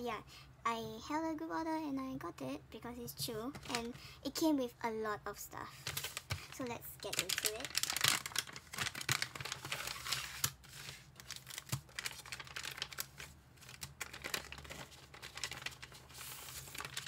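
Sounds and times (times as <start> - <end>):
packaging crinkling: 5.8 - 17.0.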